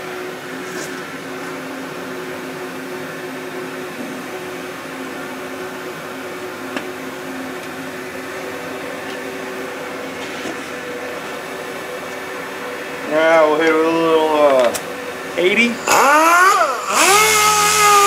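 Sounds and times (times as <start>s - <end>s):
small electric motor whirring: 15.7s - 18.0s.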